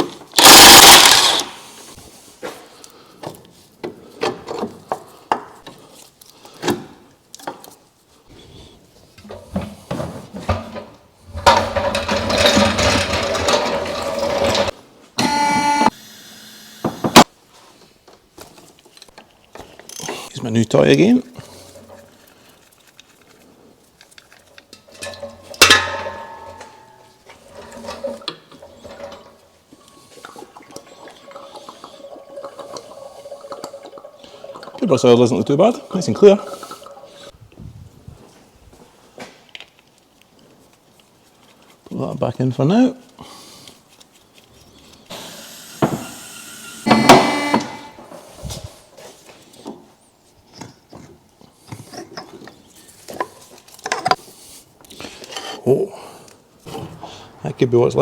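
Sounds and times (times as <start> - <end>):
impact wrench rattling: 0.4 - 1.6
short buzzing tone: 15.2 - 15.9
metal clank: 25.0 - 28.0.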